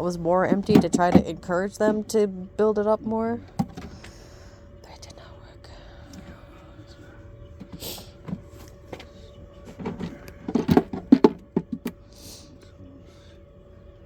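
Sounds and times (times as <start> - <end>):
wooden frames knocking: 0.0 - 2.0, 7.6 - 12.0.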